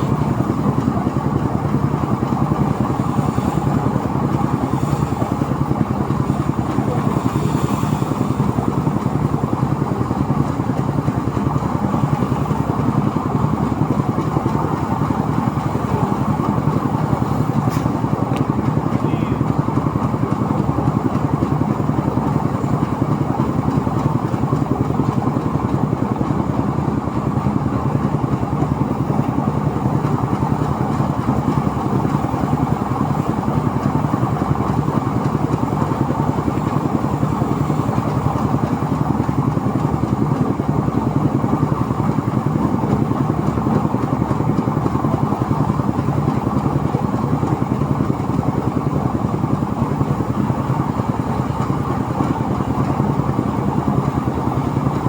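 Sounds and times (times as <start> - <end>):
threshing machine engine drone: 0.0 - 55.0.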